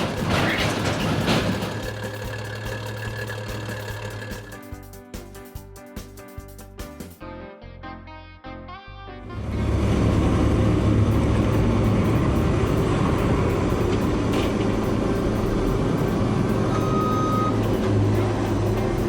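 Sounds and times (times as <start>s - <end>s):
vehicle engine and road noise: 0.0s - 5.0s, 9.2s - 19.0s
high beep: 16.7s - 17.6s.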